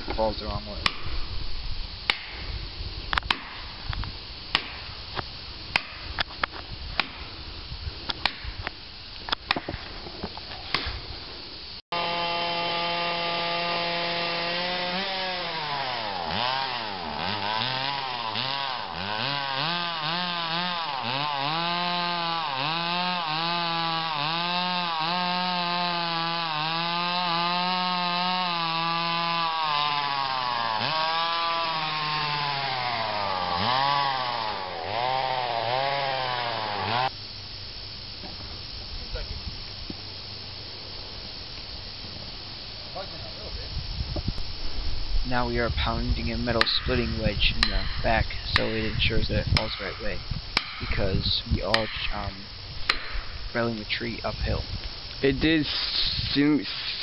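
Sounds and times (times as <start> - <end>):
axe chopping wood: 0.8 - 1.1, 2.1 - 2.4, 3.2 - 3.6, 4.5 - 4.8, 5.7 - 6.3, 7.0 - 7.3, 8.1 - 8.5, 9.3 - 9.8, 10.7 - 11.0, 49.6 - 50.0, 50.6 - 51.0, 52.9 - 53.3
chainsaw cutting: 11.9 - 37.4, 45.9 - 57.0.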